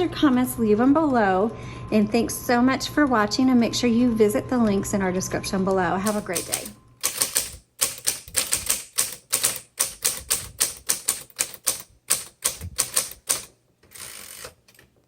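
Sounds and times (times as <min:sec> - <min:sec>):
faint steady hum: 0:00.0 - 0:07.6
electric typewriter key strikes: 0:06.0 - 0:14.8.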